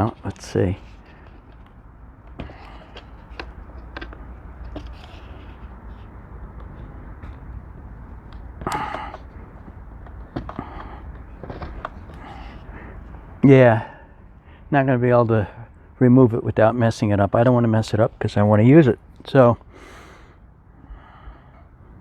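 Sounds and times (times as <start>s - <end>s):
hands handling plastic case: 0.0s - 13.4s
low steady hum: 0.0s - 22.0s.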